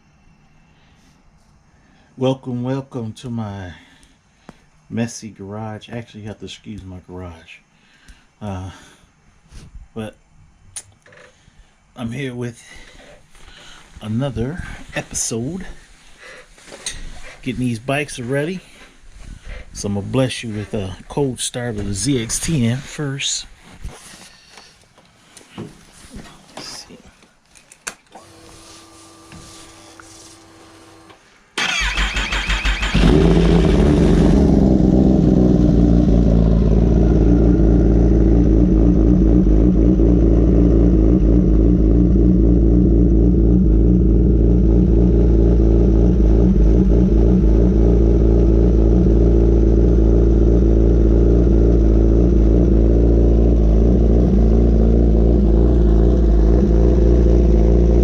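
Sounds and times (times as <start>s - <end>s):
motorcycle starter cranking: 31.6s - 34.7s
motorcycle engine idling: 32.6s - 58.0s.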